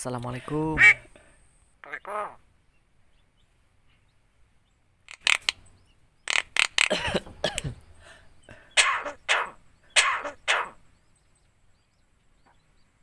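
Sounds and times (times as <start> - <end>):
myna harsh calls: 1.8 - 2.4, 8.5 - 10.8.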